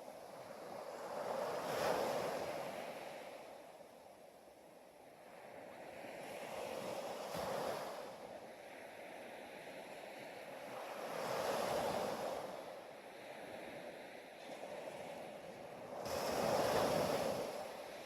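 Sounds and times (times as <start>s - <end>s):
ocean waves washing in: 5.1s - 18.0s.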